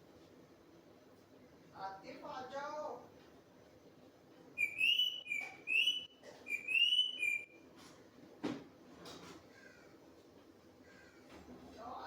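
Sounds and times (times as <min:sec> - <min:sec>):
parrot whistling: 0:04.6 - 0:07.6.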